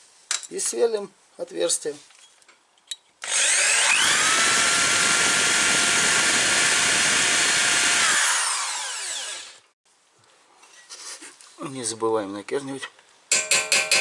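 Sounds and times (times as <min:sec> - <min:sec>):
hand drill drilling metal: 0:03.2 - 0:09.6.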